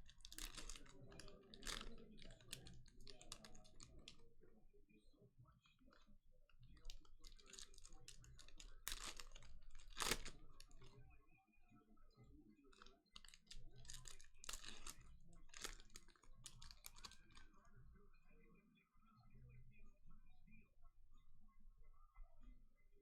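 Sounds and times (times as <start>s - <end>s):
card pack crinkling and rustling: 0.0s - 4.2s, 6.9s - 10.9s, 12.8s - 17.4s.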